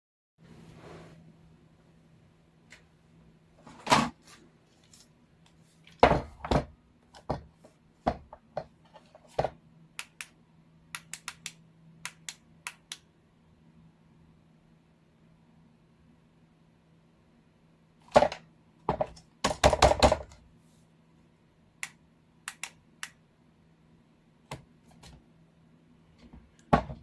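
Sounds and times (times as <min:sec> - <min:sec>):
faint steady hum: 0:00.4 - 0:27.0
heavy knocks on work surface: 0:06.0 - 0:06.7, 0:26.7 - 0:27.0
sharp clicks: 0:10.0 - 0:13.1, 0:21.8 - 0:23.2.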